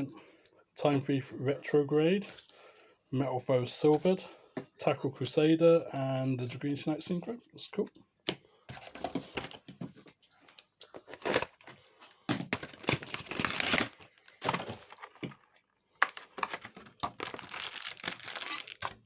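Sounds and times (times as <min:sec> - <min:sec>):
wrapper tearing and crinkling: 0:12.6 - 0:15.1, 0:16.0 - 0:19.0.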